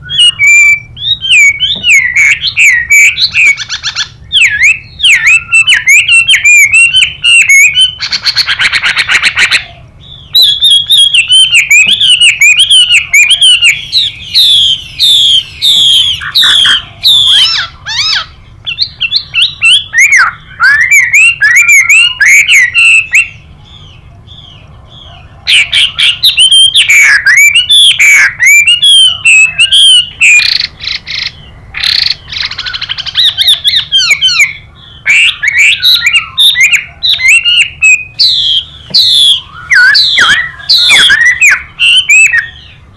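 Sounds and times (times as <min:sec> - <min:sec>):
songbird whistling song: 0:00.0 - 0:42.9
harsh hissing bird calls: 0:13.0 - 0:20.5.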